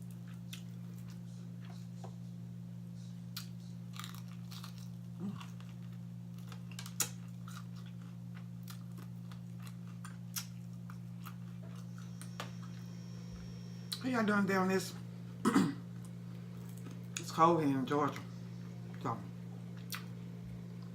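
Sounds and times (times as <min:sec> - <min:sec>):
person chewing fried food: 0:00.0 - 0:01.8, 0:03.3 - 0:12.8, 0:15.9 - 0:17.2, 0:19.6 - 0:20.9
low hum: 0:00.0 - 0:20.9.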